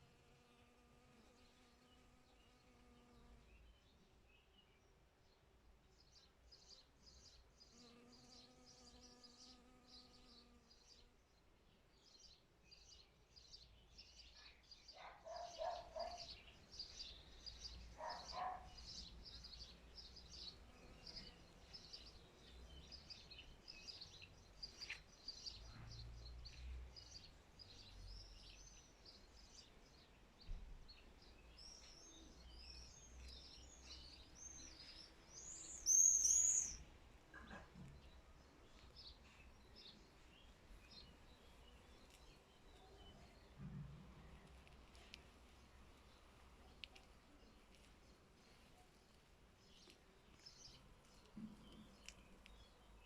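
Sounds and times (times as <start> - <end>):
small birds chirping: 0.0 - 53.0
lower bird calls: 35.4 - 36.9.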